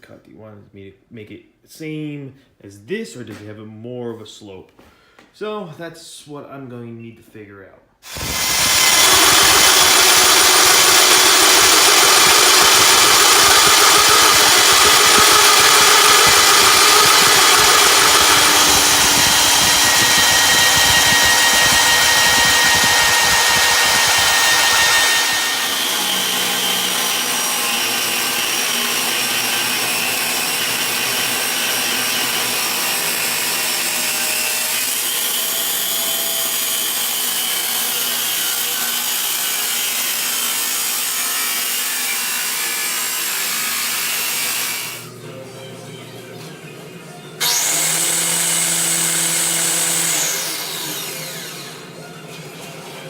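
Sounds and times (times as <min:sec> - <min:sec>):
power tool cutting steel tubing: 0:08.0 - 0:45.1, 0:47.4 - 0:52.0.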